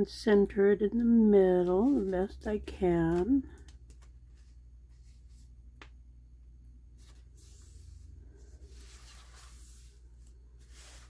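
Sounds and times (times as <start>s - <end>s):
low electrical hum: 0.0s - 11.0s
paper rustling and sliding: 7.0s - 11.0s.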